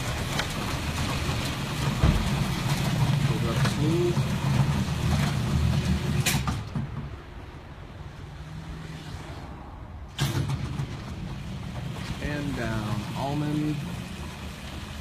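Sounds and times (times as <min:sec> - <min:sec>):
garage door opener humming: 0:00.0 - 0:06.9, 0:10.2 - 0:15.0.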